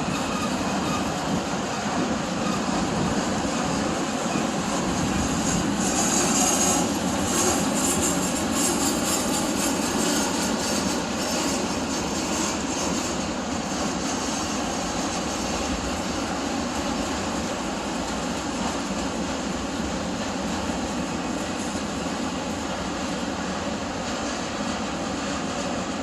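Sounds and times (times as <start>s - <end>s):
freight train rolling past: 0.0s - 26.0s.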